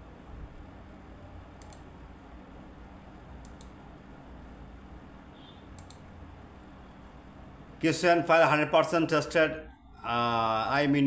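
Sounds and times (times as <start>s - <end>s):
faint low hum: 0.0s - 11.0s
computer mouse double-clicks: 1.6s - 1.9s, 3.4s - 3.8s, 5.8s - 6.1s.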